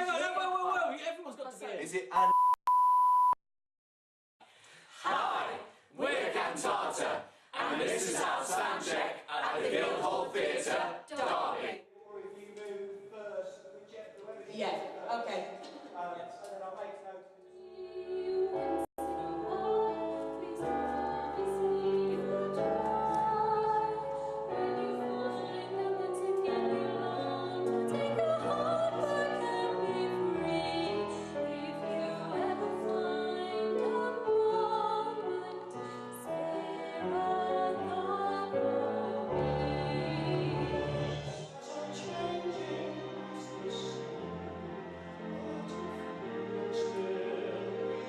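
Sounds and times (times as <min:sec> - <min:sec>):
vocal ensemble singing operatically: 0:04.8 - 0:11.8, 0:17.5 - 0:44.5, 0:45.2 - 0:48.0.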